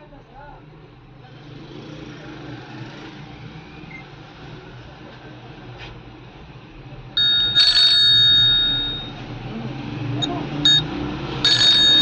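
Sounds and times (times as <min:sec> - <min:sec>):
electronic ringtone from loudspeaker: 0:07.2 - 0:09.2, 0:10.2 - 0:12.0
short beeps: 0:07.2 - 0:09.2, 0:10.2 - 0:10.9.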